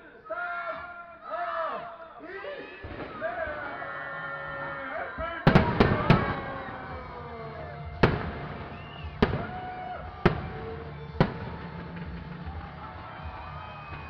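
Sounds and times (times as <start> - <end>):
fireworks bursting: 2.8 - 3.8, 5.4 - 14.0.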